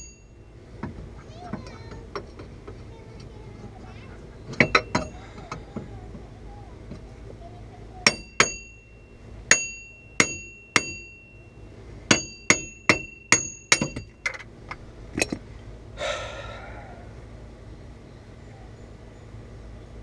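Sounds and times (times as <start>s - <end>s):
hammer striking steel: 8.0s - 8.8s, 9.5s - 11.2s, 12.1s - 14.1s.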